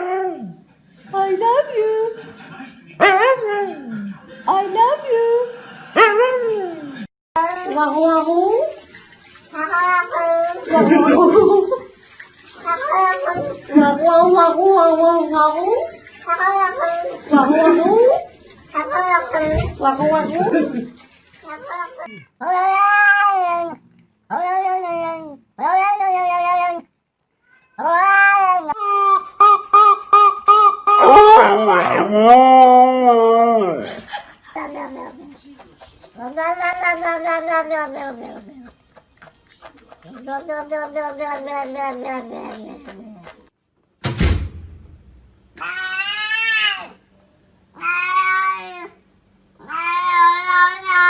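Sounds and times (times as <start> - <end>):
cat yowling: 12.6 - 13.7, 21.5 - 28.8, 36.2 - 38.7, 45.6 - 47.0, 47.8 - 49.0, 49.6 - 51.0
sharp thump: 44.0 - 45.4.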